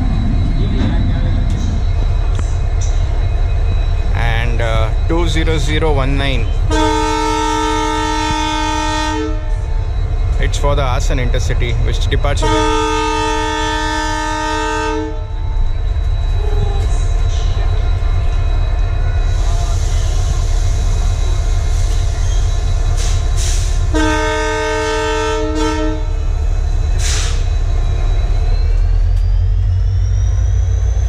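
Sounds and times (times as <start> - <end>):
rising whine: 0.0 - 14.5, 15.1 - 24.0, 26.0 - 31.0
low rumble of train: 0.0 - 31.0
locomotive air horn blast: 6.7 - 9.7, 12.4 - 15.4, 23.0 - 26.2.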